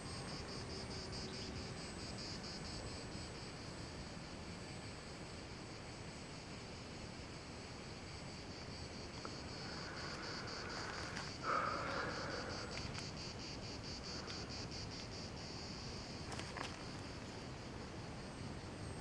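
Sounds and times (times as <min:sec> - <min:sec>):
insects chirping: 0:00.0 - 0:04.1, 0:06.3 - 0:19.0
faint clicks: 0:09.2 - 0:13.2.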